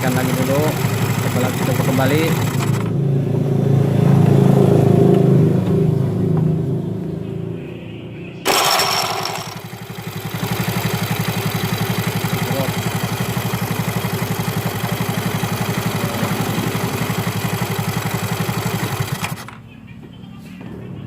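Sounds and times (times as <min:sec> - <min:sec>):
starter motor cranking: 0:00.0 - 0:02.9, 0:08.5 - 0:19.6
engine idling: 0:00.0 - 0:03.0, 0:08.4 - 0:19.8.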